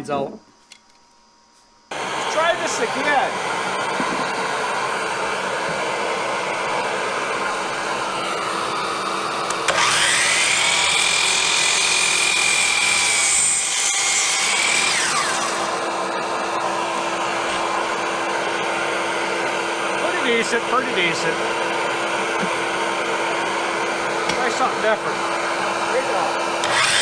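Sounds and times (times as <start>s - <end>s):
steady blowing noise: 1.9s - 8.6s
miter saw motor whining: 1.9s - 27.0s.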